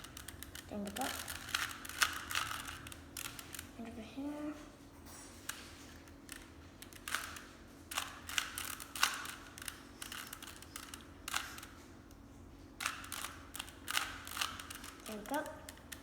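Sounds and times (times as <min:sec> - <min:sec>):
puzzle cube clicking: 0:00.0 - 0:03.7, 0:06.3 - 0:11.8, 0:12.8 - 0:16.0.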